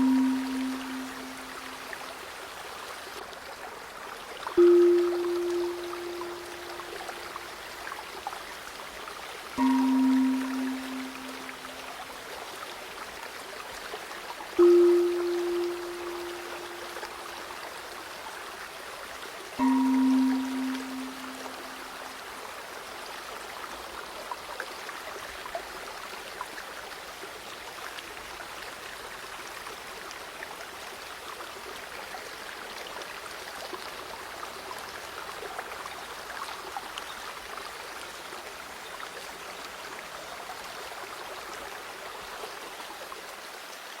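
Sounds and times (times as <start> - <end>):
gong ringing: 0.0 - 1.6, 4.6 - 7.1, 9.6 - 11.7, 14.6 - 17.2, 19.6 - 21.8
river water flowing: 0.0 - 44.0.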